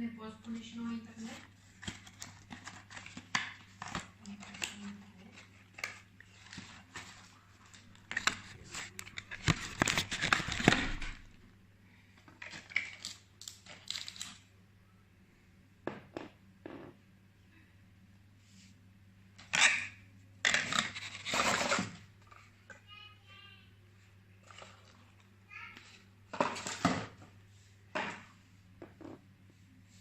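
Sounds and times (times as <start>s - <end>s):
packaging rustling and tearing: 1.6s - 11.4s, 12.4s - 14.4s, 20.5s - 22.0s.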